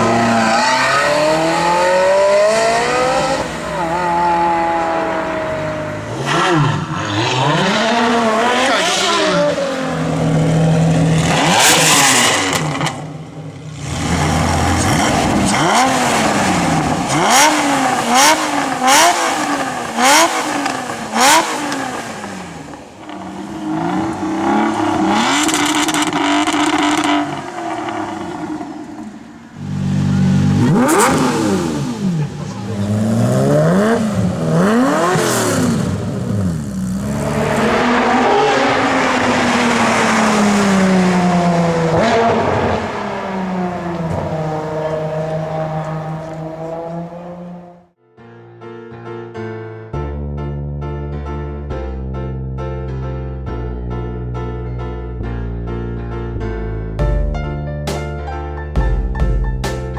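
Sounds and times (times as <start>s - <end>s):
car engines revving and accelerating: 0.0s - 48.0s.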